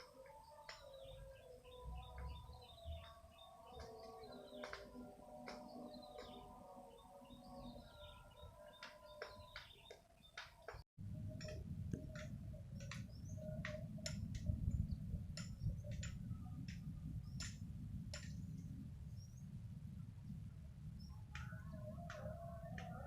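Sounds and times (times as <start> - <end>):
steady low rumble: 11.0 - 23.0.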